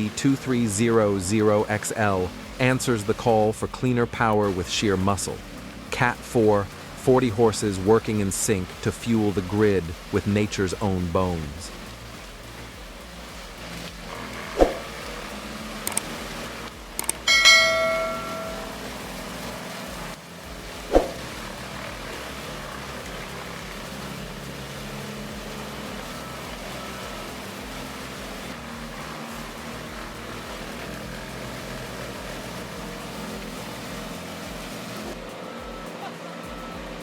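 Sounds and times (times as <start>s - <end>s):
machine engine running: 0.0s - 17.3s, 17.9s - 37.0s
background music: 0.0s - 37.0s
loud ringing hit: 17.3s - 19.2s.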